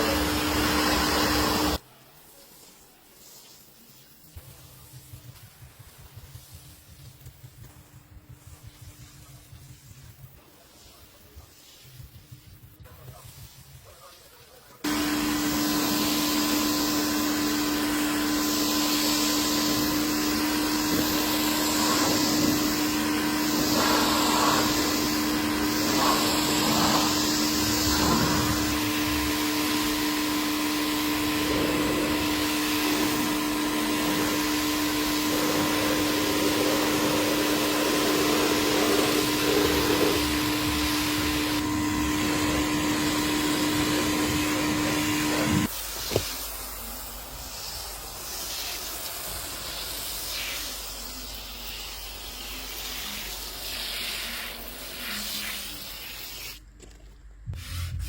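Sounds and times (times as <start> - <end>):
vacuum cleaner running: 0.0 - 1.8, 14.8 - 56.0.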